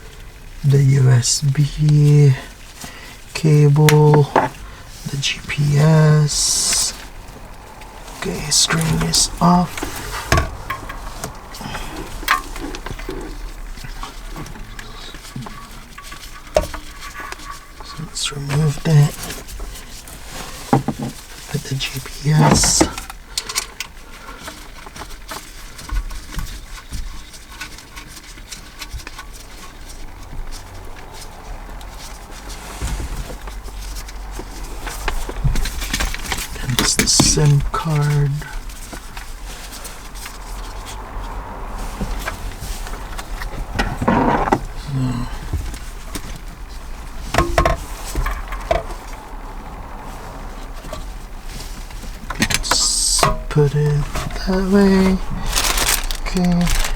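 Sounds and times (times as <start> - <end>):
cables and plastic parts handled: 1.4 - 56.9
dull thumps: 6.7 - 14.7
hands handling plastic parts clicking: 50.9 - 56.9.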